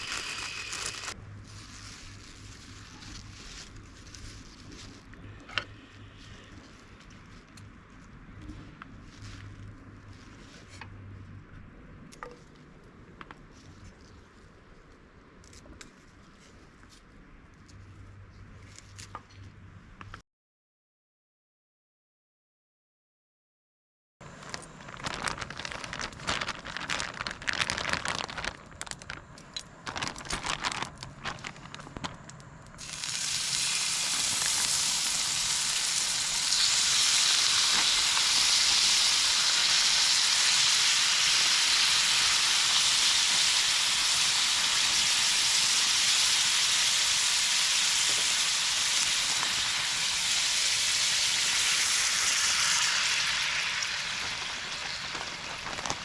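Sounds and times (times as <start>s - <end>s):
food sizzling in a pan: 32.8s - 55.6s.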